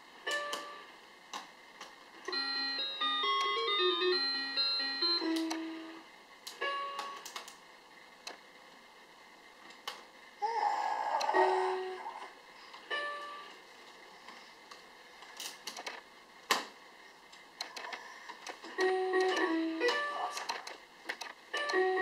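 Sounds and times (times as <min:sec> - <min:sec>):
toy electronic beeping tune: 0:02.3 - 0:05.9.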